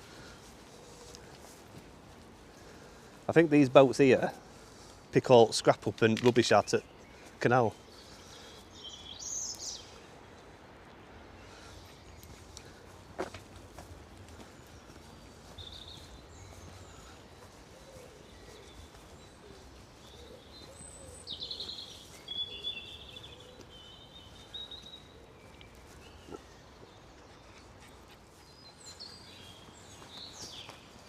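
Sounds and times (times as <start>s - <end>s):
birds chirping and trilling: 2.4s - 31.0s.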